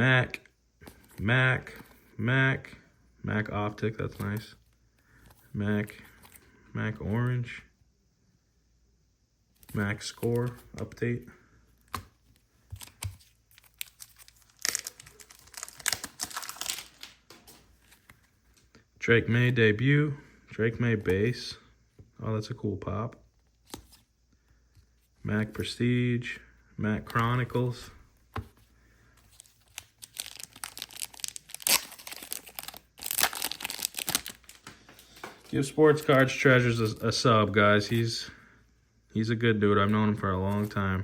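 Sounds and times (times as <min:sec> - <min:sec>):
plastic packaging crinkling: 0:12.7 - 0:18.2, 0:29.3 - 0:36.3.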